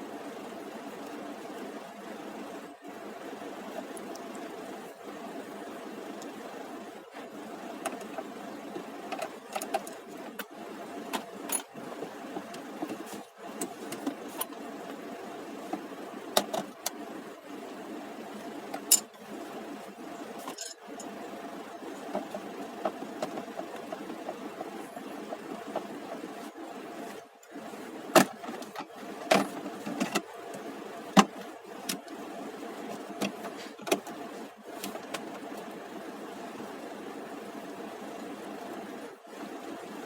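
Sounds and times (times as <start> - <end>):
steady hum: 0.0 - 40.0.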